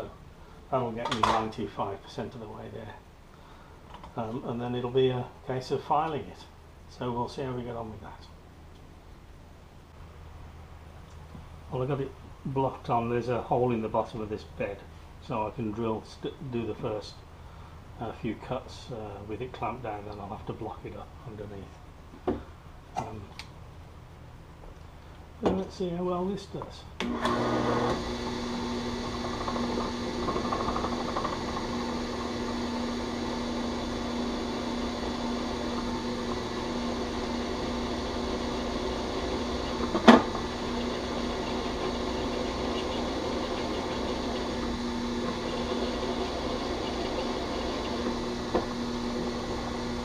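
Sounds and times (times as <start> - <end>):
drill press running: 27.0 - 50.0.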